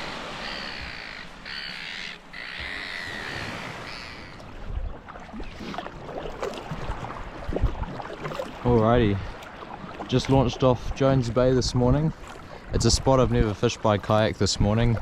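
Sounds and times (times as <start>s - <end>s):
bird calling: 0.0s - 4.5s.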